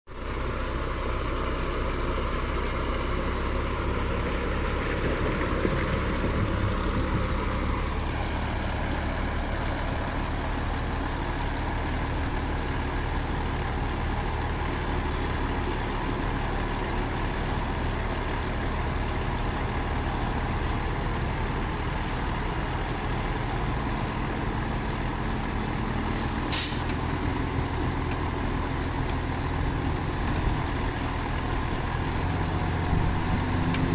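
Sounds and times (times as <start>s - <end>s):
heavy diesel machinery running: 0.1s - 33.9s
short sharp hiss: 26.5s - 27.0s.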